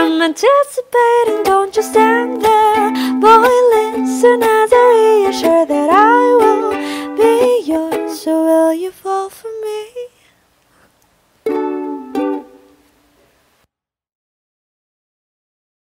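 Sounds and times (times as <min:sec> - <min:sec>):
ukulele strumming: 0:00.0 - 0:09.9, 0:11.4 - 0:12.9
woman singing: 0:00.0 - 0:10.3.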